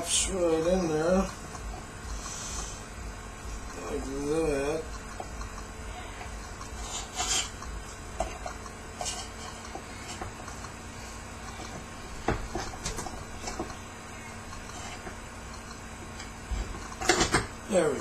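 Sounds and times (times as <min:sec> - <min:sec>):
low steady hum: 0:00.0 - 0:18.0.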